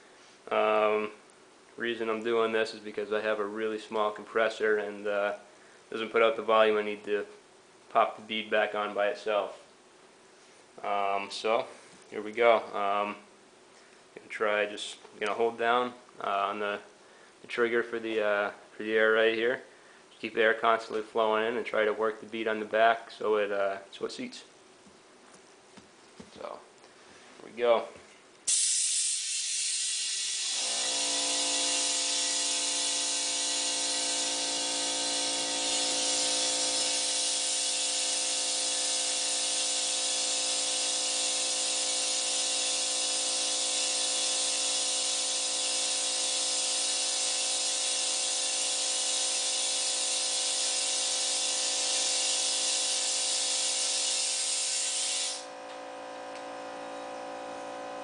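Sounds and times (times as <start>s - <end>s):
compressed air hissing: 28.5s - 55.5s
air compressor motor hum: 28.5s - 58.0s.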